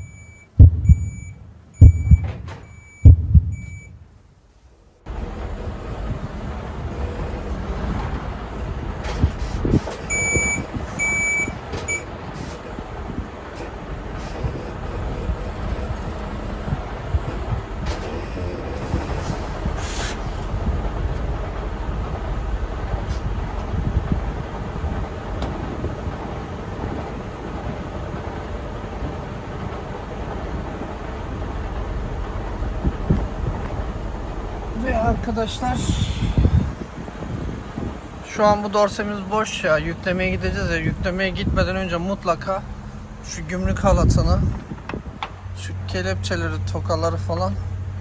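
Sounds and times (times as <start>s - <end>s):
high beeps: 0.0s - 4.0s, 10.1s - 12.1s
diesel engine running: 0.0s - 48.0s.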